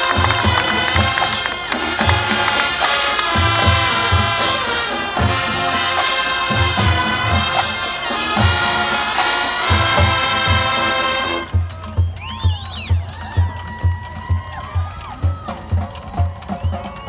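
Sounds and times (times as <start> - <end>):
brass section playing chords: 0.0 - 11.5.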